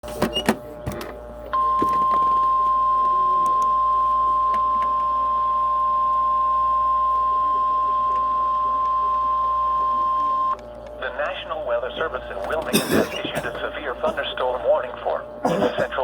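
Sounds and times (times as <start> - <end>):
steady high alarm tone: 1.5 - 10.6.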